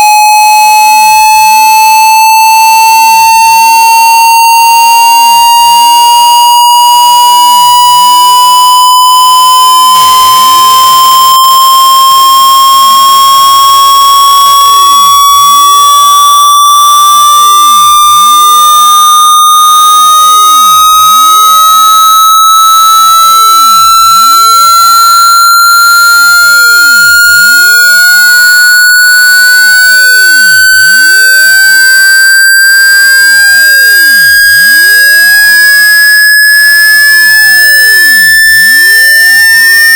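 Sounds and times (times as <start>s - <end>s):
square-wave tone sweeping upward: 0.0s - 19.8s.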